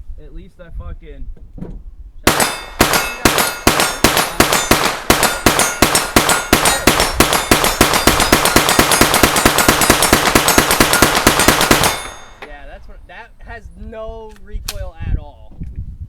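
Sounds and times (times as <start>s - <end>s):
rapid semi-automatic gunfire: 2.3s - 12.4s.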